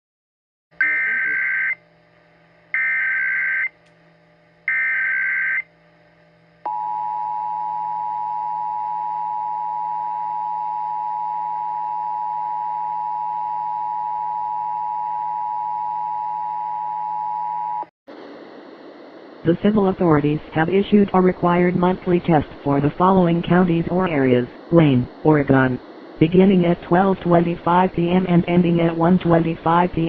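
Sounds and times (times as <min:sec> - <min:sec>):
two-tone attention signal: 0:00.8 - 0:01.8.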